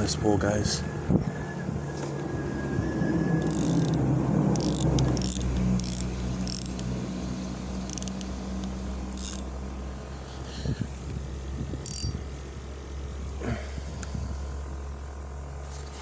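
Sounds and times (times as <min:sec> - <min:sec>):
low rumble of road traffic: 0:00.0 - 0:16.0
fishing reel ratchet clicking: 0:03.4 - 0:06.9, 0:07.8 - 0:09.5, 0:11.8 - 0:12.2.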